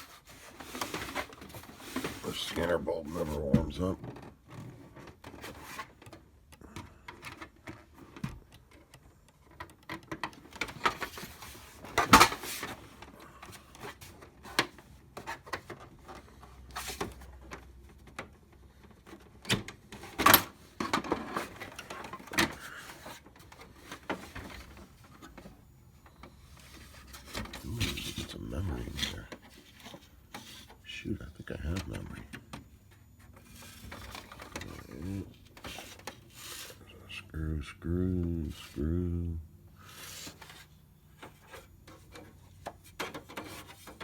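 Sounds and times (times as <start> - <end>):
plastic printer parts clicking: 3.5 - 28.1.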